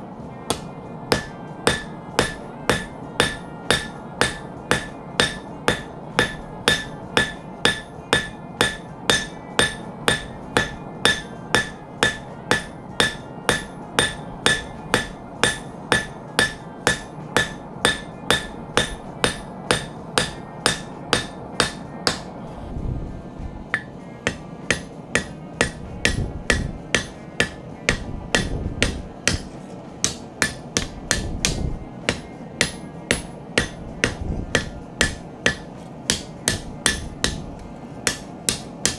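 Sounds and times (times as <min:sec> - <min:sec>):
hammer forging steel on anvil: 0:00.1 - 0:38.9
low rumble: 0:22.4 - 0:23.8.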